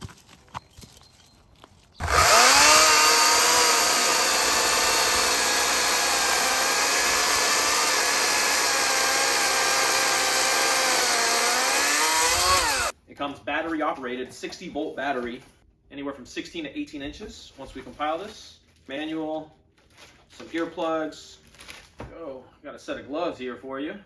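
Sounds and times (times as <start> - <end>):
electric chainsaw whine: 2.0 - 12.9.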